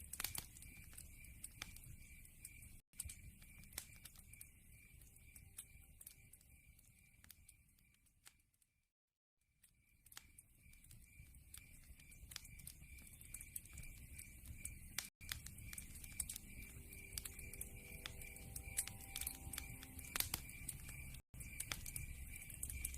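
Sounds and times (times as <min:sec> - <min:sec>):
logs crackling and popping: 0:00.0 - 0:08.6, 0:09.6 - 0:22.9
low rumble of flame: 0:10.1 - 0:22.9.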